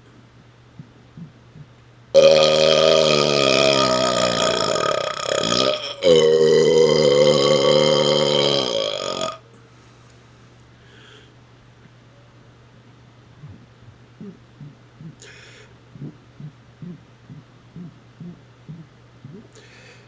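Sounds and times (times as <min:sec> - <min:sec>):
loud belches: 0:02.2 - 0:09.4.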